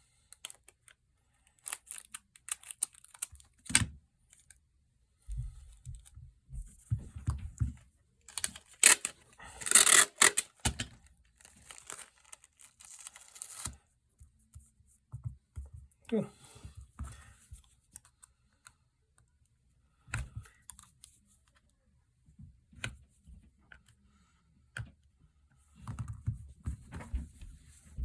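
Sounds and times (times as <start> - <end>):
tape pulled off roll and ripped: 8.3 - 10.9.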